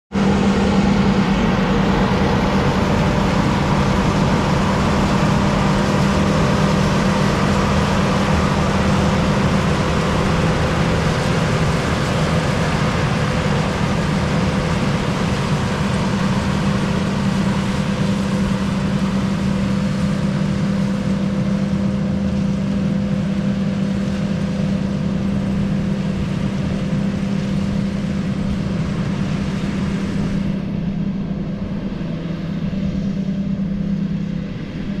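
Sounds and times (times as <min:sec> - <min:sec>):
harvesting machine engine drone: 0:00.1 - 0:35.0.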